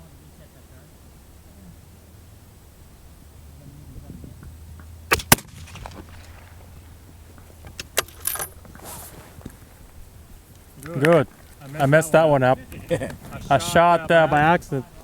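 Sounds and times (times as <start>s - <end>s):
low steady hum: 0.0s - 15.0s
brief rustle: 7.7s - 11.9s.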